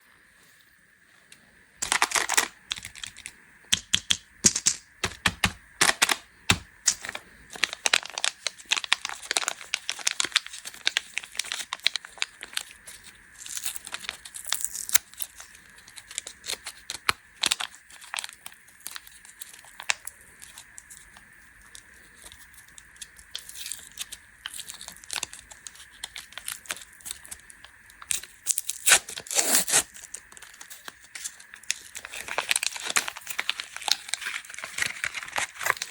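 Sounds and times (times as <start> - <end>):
plastic wrappers crinkling: 1.8 - 35.9.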